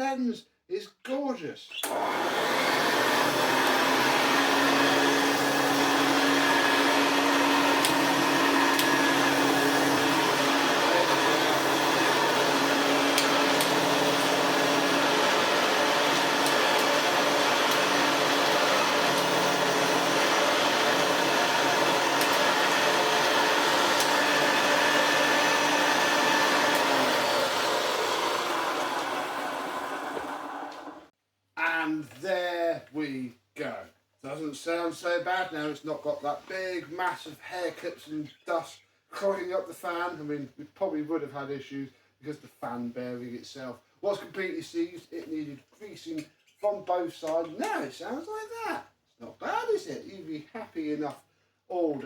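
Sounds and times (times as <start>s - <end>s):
upright vacuum cleaner running: 1.8s - 31.1s.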